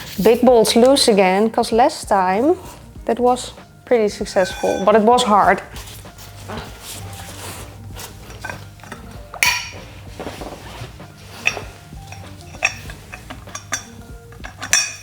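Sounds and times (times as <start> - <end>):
wrench clinking on metal: 8.3 - 9.9, 11.4 - 15.0.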